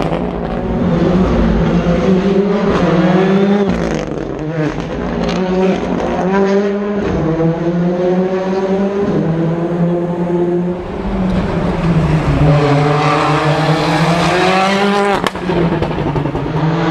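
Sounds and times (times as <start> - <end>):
rally car engine revving: 0.0 - 16.9.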